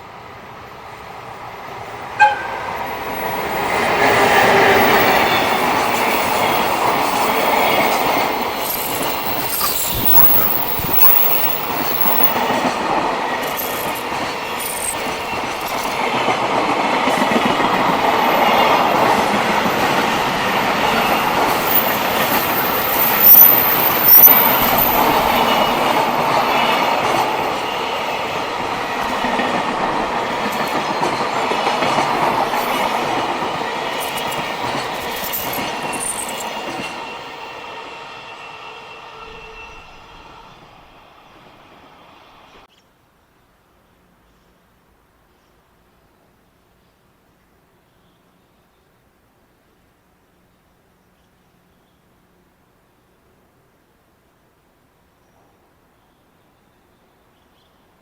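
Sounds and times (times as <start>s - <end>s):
train wheels clattering over rails: 1.8s - 37.4s
wheel squeal: 3.2s - 16.1s, 20.9s - 25.9s, 34.0s - 37.0s.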